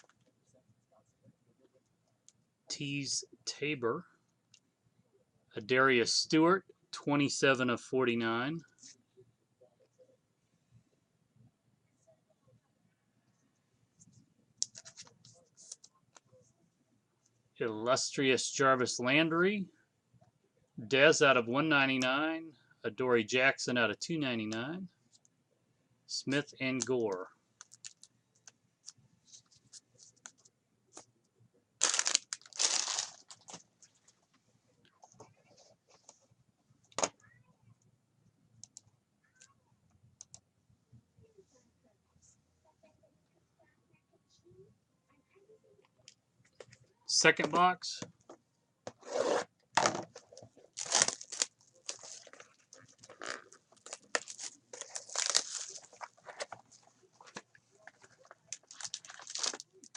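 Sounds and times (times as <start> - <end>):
cards and packaging crinkling: 26.8 - 28.1, 31.8 - 33.6, 50.2 - 59.9
wrapper tearing: 31.8 - 33.4, 50.7 - 56.6, 58.2 - 59.9.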